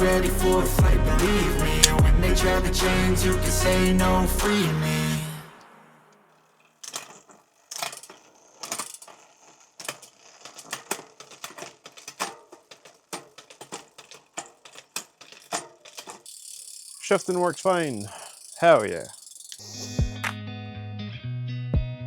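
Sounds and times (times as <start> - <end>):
bike gear shifter clicks: 1.8 - 2.0, 6.5 - 20.4.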